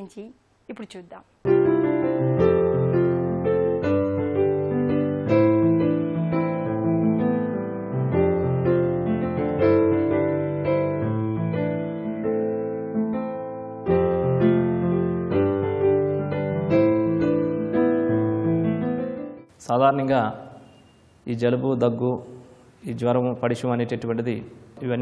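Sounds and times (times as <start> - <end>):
slow piano chords: 1.5 - 19.5.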